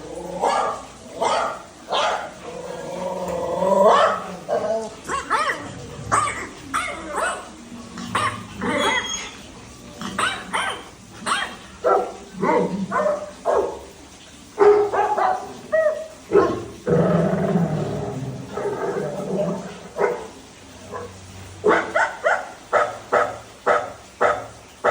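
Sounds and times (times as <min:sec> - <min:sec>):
dog barking: 0:00.4 - 0:02.4, 0:03.9 - 0:09.2, 0:10.0 - 0:14.0, 0:14.6 - 0:16.8, 0:20.0 - 0:24.9.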